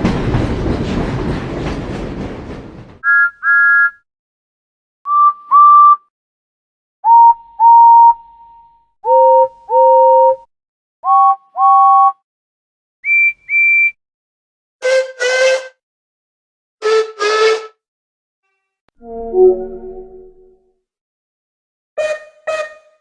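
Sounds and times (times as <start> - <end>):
steam locomotive whistles: 14.8 - 15.8, 16.8 - 17.8, 22.0 - 23.0.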